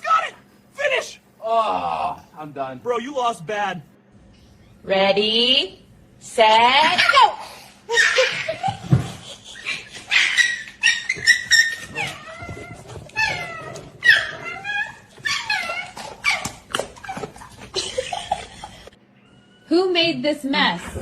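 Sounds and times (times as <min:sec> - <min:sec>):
dog whining and yipping: 0:07.9 - 0:08.6, 0:10.0 - 0:17.7.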